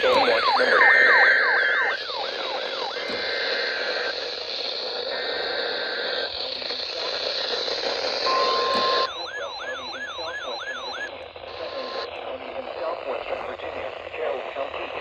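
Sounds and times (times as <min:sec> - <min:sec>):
downward sweeping siren tone: 0:00.0 - 0:04.0, 0:08.3 - 0:11.1
radio static hiss: 0:00.0 - 0:15.0
steady beep: 0:08.2 - 0:11.1
short data tones: 0:08.2 - 0:12.1.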